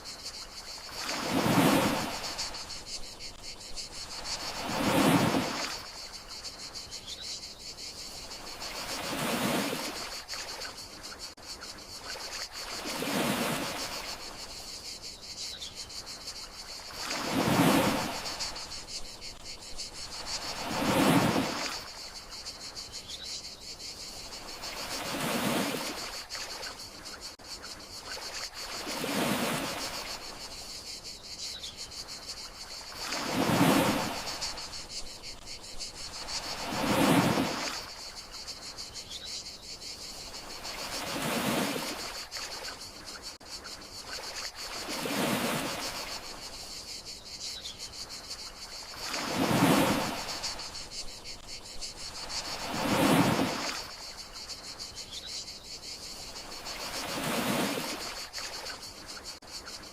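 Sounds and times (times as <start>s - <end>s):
sea waves rolling onto shore: 0.0s - 6.6s, 8.2s - 11.0s, 12.0s - 14.6s, 16.5s - 19.4s, 20.0s - 22.5s, 24.2s - 26.8s, 28.0s - 30.6s, 32.4s - 35.0s, 36.0s - 38.6s, 40.2s - 43.3s, 44.0s - 46.6s, 48.6s - 54.4s, 56.5s - 59.3s
crickets chirping: 0.0s - 59.9s.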